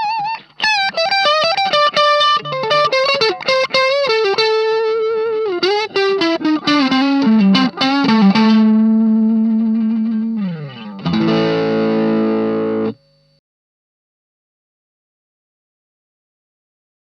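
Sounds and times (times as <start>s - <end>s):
overdriven electric guitar lead: 0.0s - 13.3s
guitar chord ringing: 0.0s - 13.4s.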